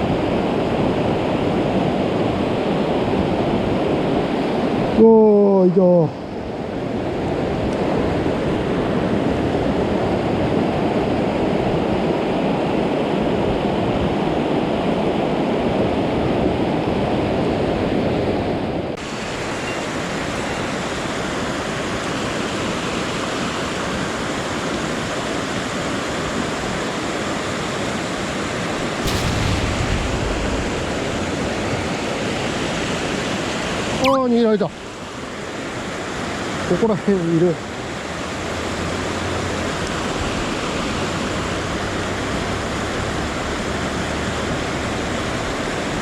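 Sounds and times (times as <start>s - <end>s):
stream water rushing: 19.0s - 46.0s
low rumble: 29.0s - 32.2s.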